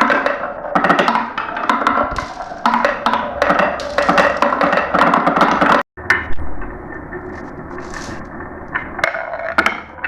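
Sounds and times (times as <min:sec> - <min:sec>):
marbles rolling on track: 0:00.0 - 0:05.8, 0:08.7 - 0:10.0
marble clicks: 0:00.0 - 0:06.4.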